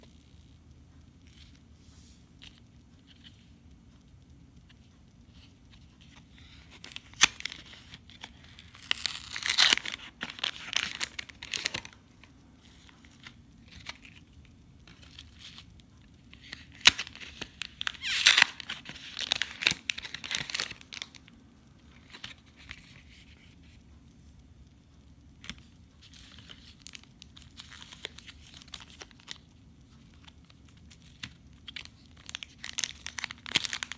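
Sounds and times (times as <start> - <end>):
plastic packaging tearing and crinkling: 6.1 - 12.0, 16.3 - 21.3, 26.1 - 29.5, 30.1 - 33.9.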